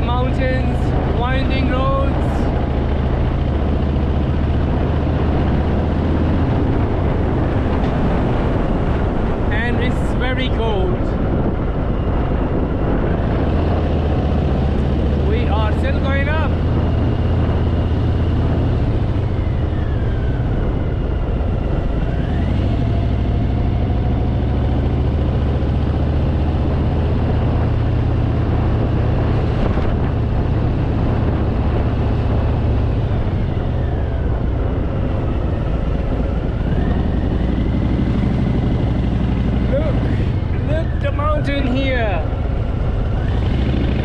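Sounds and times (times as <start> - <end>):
motorcycle engine running: 0.0 - 44.0
wind rushing over microphone: 0.0 - 44.0.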